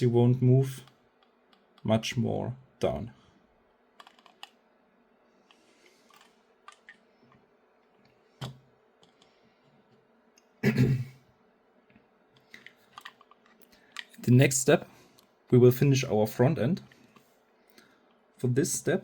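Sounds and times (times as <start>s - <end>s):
plastic parts clicking: 4.0s - 4.6s, 12.4s - 14.2s.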